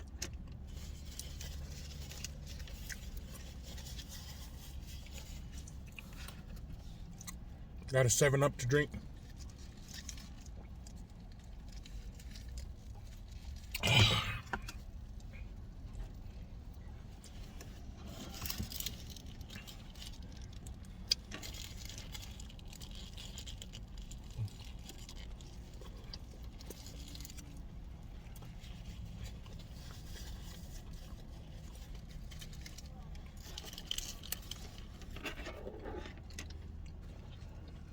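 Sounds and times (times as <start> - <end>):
food wrapper rustling: 0.1 - 7.4, 17.1 - 37.9.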